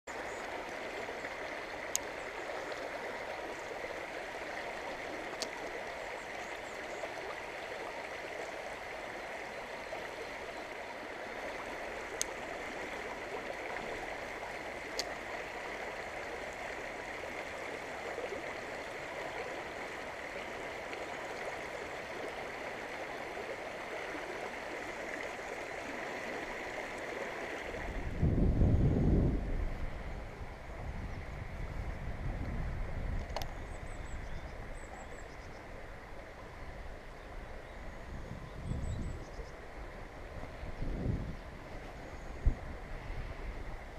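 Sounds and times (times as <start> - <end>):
stream rushing over rocks: 0.1 - 28.5.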